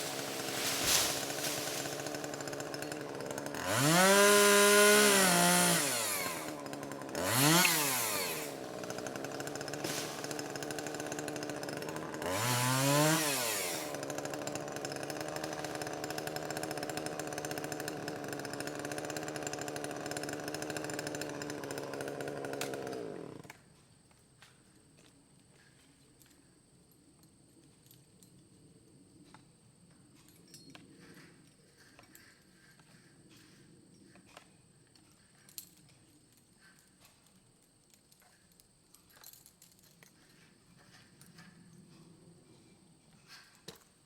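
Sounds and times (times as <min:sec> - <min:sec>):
chainsaw idling and revving: 0:00.0 - 0:23.6.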